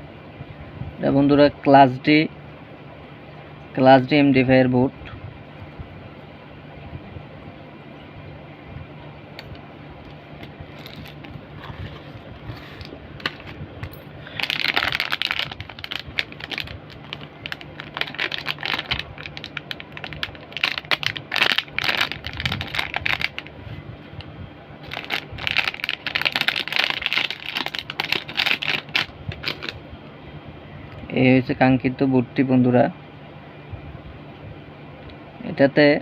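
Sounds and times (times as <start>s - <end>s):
faint low hum: 0.0s - 36.0s
plastic packaging rustling: 10.1s - 23.8s, 24.8s - 29.8s.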